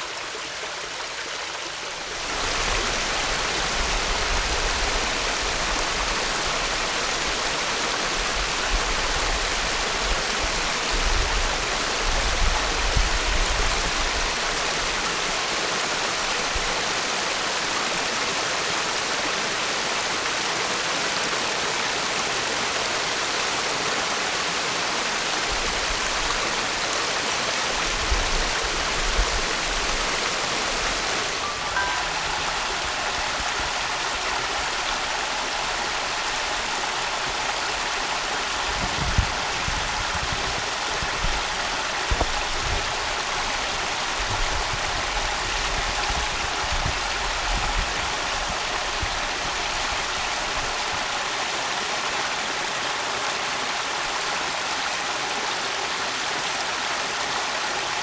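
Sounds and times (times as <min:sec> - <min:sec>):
stream flowing over rocks: 0:00.0 - 0:58.0.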